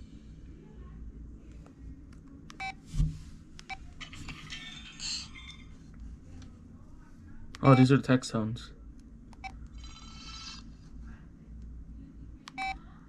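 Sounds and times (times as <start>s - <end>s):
phone keypad beeps and clicks: 2.5s - 2.8s, 12.5s - 12.8s.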